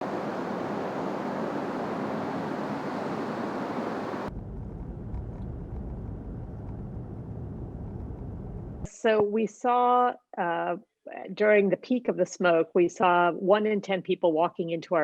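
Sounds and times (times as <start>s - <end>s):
steady rushing noise: 0.0s - 8.9s
low rumble: 4.2s - 8.9s.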